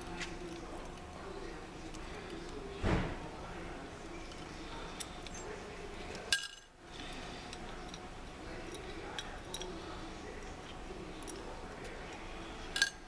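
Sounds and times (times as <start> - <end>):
metal hardware clinking: 4.3 - 6.8, 7.4 - 9.8, 10.6 - 13.0.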